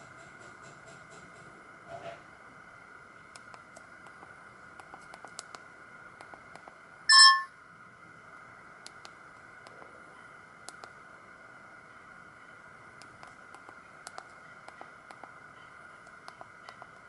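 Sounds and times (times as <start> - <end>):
faint steady whine: 1.4 - 17.0
mobile phone beep: 7.1 - 7.5.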